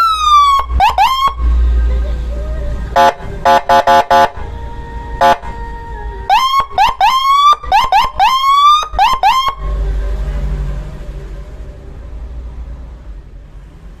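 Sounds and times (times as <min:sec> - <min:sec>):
electronic siren whoops: 0:00.0 - 0:01.6, 0:03.0 - 0:09.7
short horn blasts: 0:03.0 - 0:05.9.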